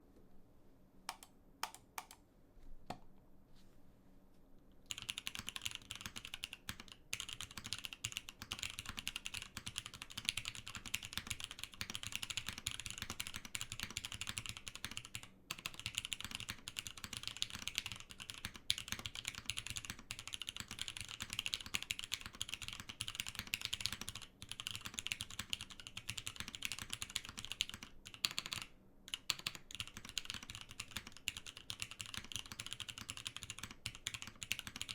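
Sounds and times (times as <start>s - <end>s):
typing on mechanical keyboard: 1.1s - 2.2s, 4.9s - 34.9s.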